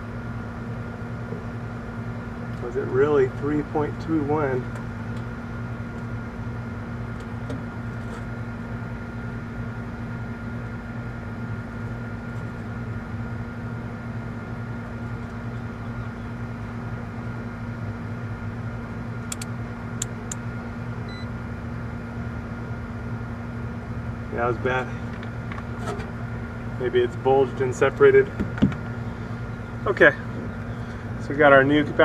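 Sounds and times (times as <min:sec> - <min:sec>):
machinery hum: 0:00.0 - 0:32.0
small sharp clicks: 0:19.3 - 0:20.4.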